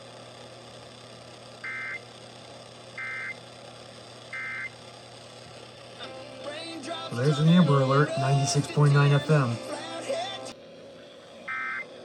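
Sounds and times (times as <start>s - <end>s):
modem-like data-burst squawks: 1.6s - 2.0s, 3.0s - 3.4s, 4.3s - 4.8s, 11.5s - 11.9s
radio hiss: 7.1s - 10.5s.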